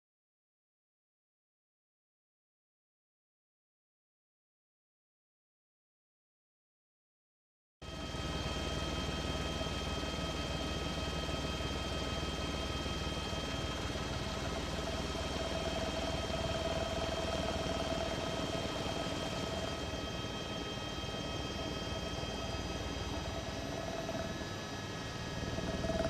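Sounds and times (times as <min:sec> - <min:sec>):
helicopter engine and rotor drone: 0:07.8 - 0:26.0
high whining tones: 0:08.0 - 0:26.0.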